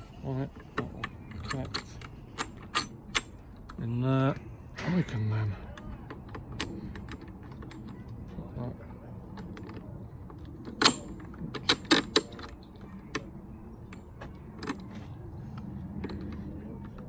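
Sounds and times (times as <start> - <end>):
plastic parts clicking and knocking: 9.4 - 17.0.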